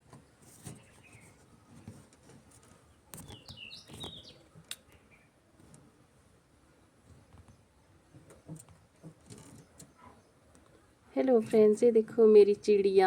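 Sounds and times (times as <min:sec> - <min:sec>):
pet bird chirping: 0:03.2 - 0:04.4.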